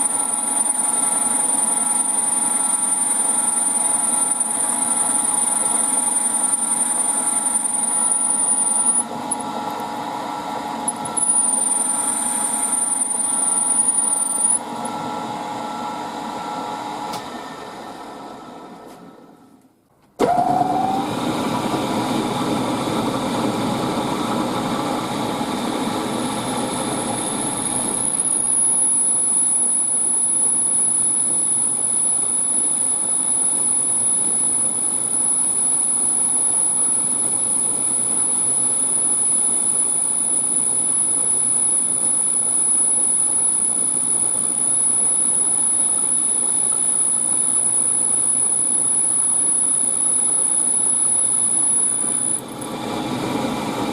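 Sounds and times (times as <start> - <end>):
thin high whine: 0.0 - 9.8, 10.8 - 15.0, 26.2 - 52.7.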